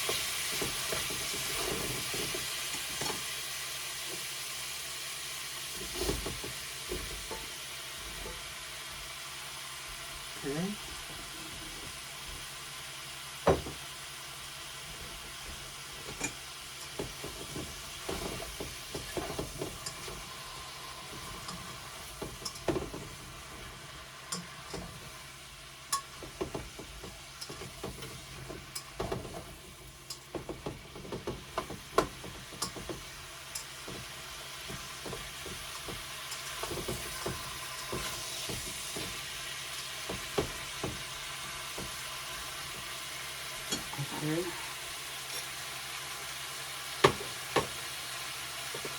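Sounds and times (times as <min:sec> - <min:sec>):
food sizzling in a frying pan: 0:00.0 - 0:48.9
utensil knocking and scraping pan: 0:14.9 - 0:20.3, 0:21.0 - 0:25.2, 0:25.9 - 0:42.9.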